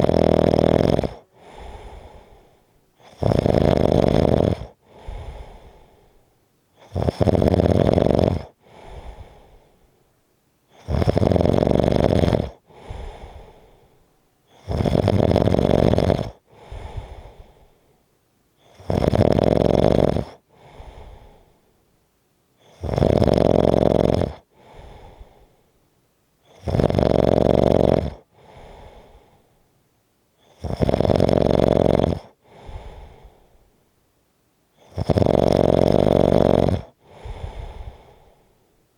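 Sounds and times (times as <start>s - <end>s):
loud snoring: 0.0s - 2.3s, 3.0s - 5.6s, 6.8s - 9.3s, 10.7s - 13.7s, 14.5s - 17.4s, 18.6s - 21.4s, 22.6s - 25.2s, 26.5s - 29.2s, 30.4s - 33.0s, 34.8s - 38.1s
soft short breath: 1.3s - 2.8s, 4.8s - 6.4s, 8.6s - 10.1s, 12.7s - 14.6s, 16.5s - 18.8s, 20.5s - 21.8s, 24.5s - 25.8s, 28.3s - 29.7s, 32.4s - 33.8s, 37.0s - 38.8s.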